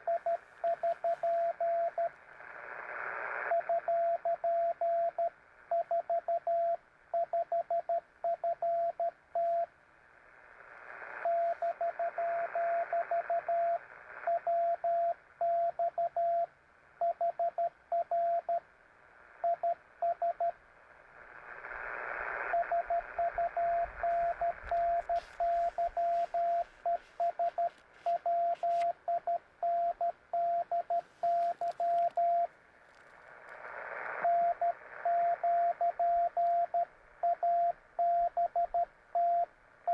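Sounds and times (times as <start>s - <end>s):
morse code beeps: 0.0s - 2.1s, 22.6s - 32.5s, 34.2s - 39.9s
radio hiss: 0.0s - 5.7s, 9.5s - 15.1s, 20.4s - 36.7s.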